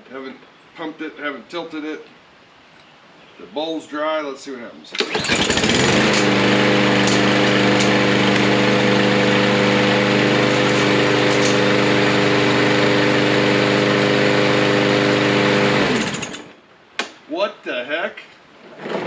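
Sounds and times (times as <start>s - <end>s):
lawn mower engine running: 5.0s - 16.5s.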